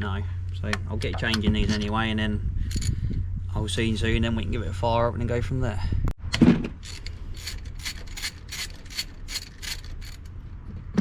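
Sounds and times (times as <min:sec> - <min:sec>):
ratchet wrench clicking: 0:06.8 - 0:10.3.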